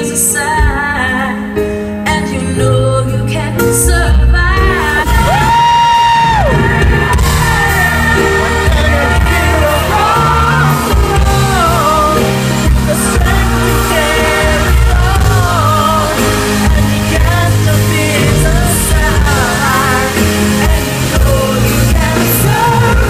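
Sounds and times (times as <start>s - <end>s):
band playing pop ballad: 0.0s - 23.0s
crowd yelling: 4.8s - 23.0s
woman singing vocal runs: 9.2s - 23.0s.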